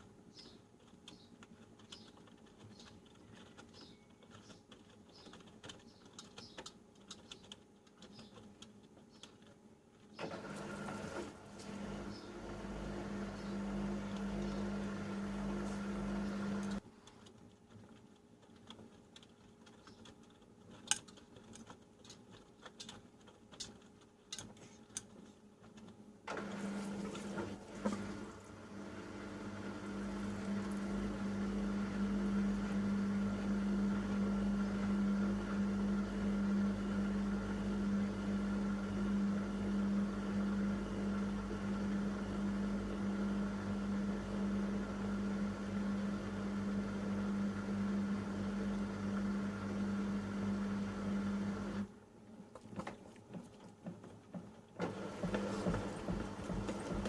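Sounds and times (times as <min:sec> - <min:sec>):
washing machine motor humming: 0:10.2 - 0:16.8, 0:26.2 - 0:57.0.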